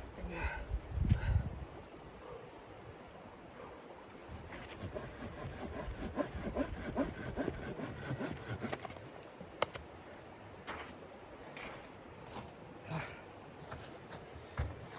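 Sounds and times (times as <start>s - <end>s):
hand saw strokes on wood: 4.3s - 9.0s.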